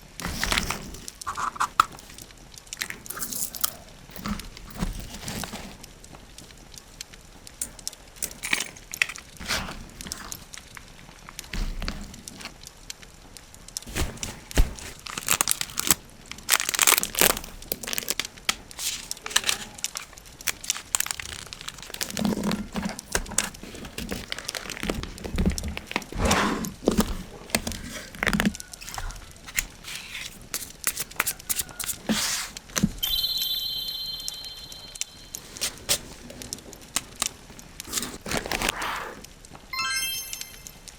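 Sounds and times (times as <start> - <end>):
wrapping crinkling and rustling: 0.0 - 33.0, 35.2 - 40.1
packaging tearing: 13.9 - 32.1, 36.9 - 39.2
high ringing tone: 33.0 - 35.4, 39.8 - 40.9.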